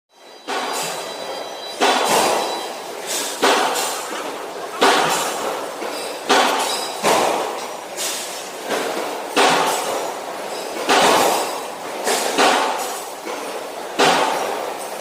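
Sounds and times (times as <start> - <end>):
ringing knocks in a hall: 0.2 - 7.8.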